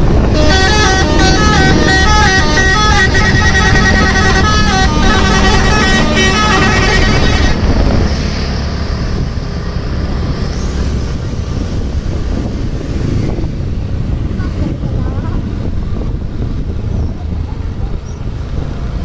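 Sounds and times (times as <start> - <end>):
engine noise: 0.0 - 19.0
road noise: 0.0 - 19.0
bus horn playing a tune: 0.1 - 8.0.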